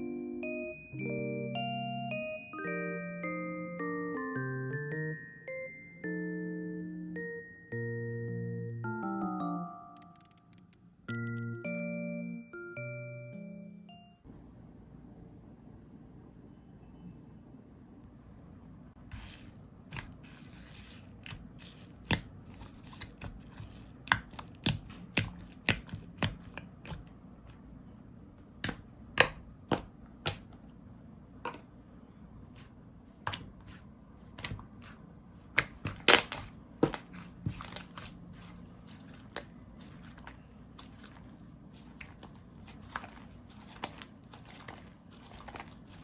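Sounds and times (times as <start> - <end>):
sticky slime pops and clicks: 28.6 - 30.5.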